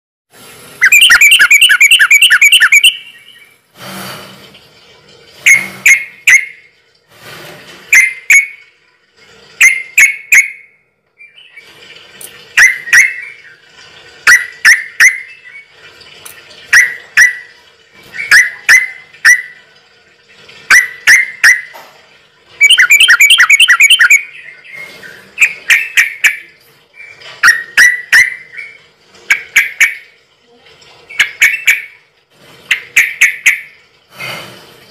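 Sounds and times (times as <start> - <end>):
bird chirping: 0.8 - 3.6, 22.6 - 28.8
bird chirping trills: 0.8 - 3.6, 22.6 - 28.8.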